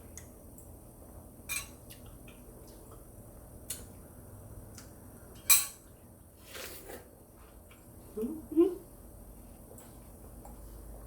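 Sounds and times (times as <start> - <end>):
utensils clinking against a dish: 1.5 - 1.8, 5.4 - 5.9.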